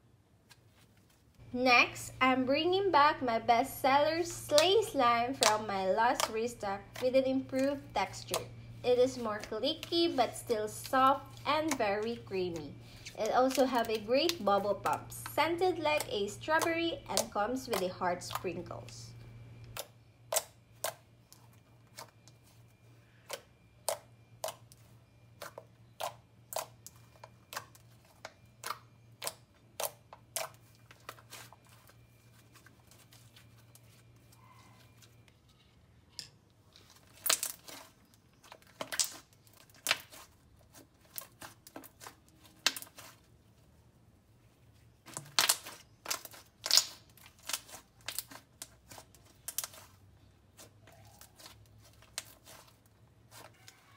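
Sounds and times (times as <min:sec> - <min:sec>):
slime clicking and popping: 0:37.1 - 0:37.9, 0:45.1 - 0:49.9.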